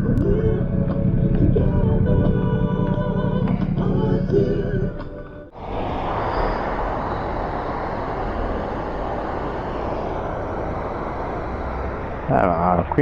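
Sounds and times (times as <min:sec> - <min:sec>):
waterfall roaring: 0:05.6 - 0:13.0.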